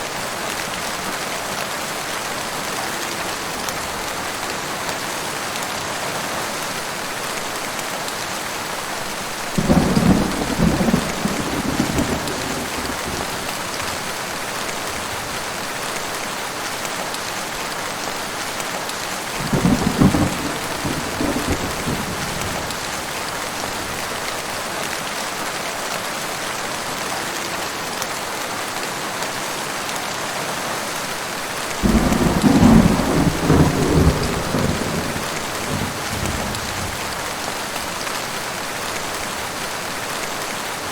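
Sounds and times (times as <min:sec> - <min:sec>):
heavy rain: 0:00.0 - 0:40.9
rolling thunder: 0:09.6 - 0:13.6, 0:19.4 - 0:22.8, 0:31.8 - 0:37.2.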